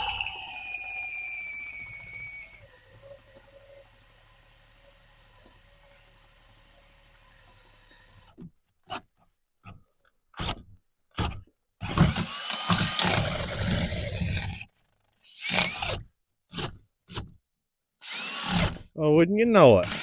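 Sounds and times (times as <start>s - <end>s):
cordless drill boring through steel: 0.0s - 8.4s, 11.8s - 16.0s, 18.0s - 18.8s.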